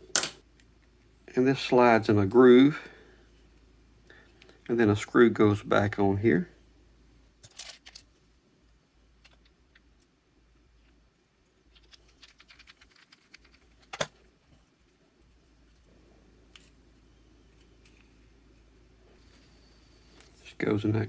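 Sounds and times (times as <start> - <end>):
small parts clicking and tapping: 7.4 - 8.1, 9.2 - 10.1, 11.7 - 14.2.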